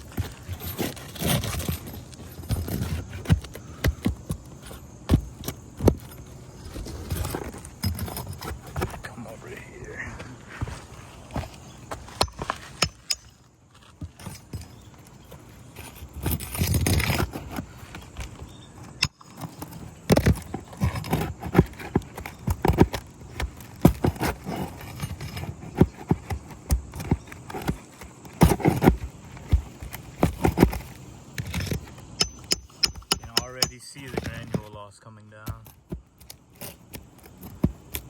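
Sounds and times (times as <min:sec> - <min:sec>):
rustling scrape: 0:00.0 - 0:03.8, 0:06.0 - 0:32.1
knocks and clicks on shingles: 0:00.0 - 0:09.1, 0:10.1 - 0:38.0.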